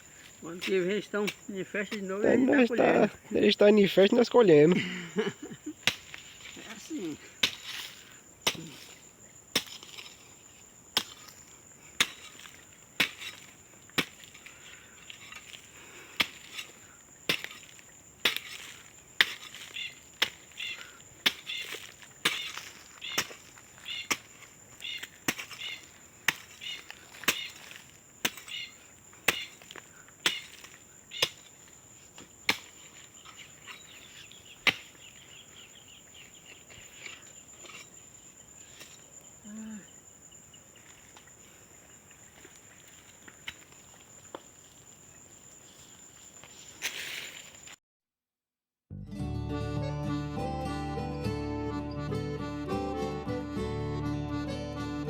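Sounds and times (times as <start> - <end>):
insects trilling: 0.0 - 47.8
hand tool chopping: 5.8 - 6.8, 7.4 - 10.3, 11.0 - 31.6, 32.2 - 35.0.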